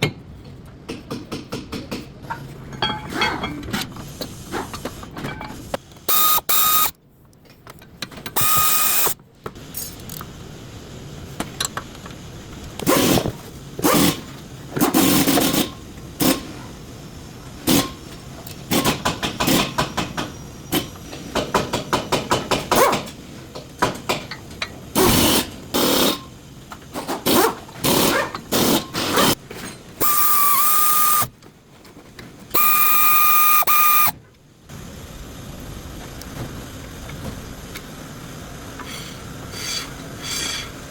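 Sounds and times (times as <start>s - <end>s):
hissing air tool: 6.1s - 6.9s, 8.4s - 9.2s, 24.9s - 26.2s, 30.0s - 31.3s, 32.5s - 34.1s.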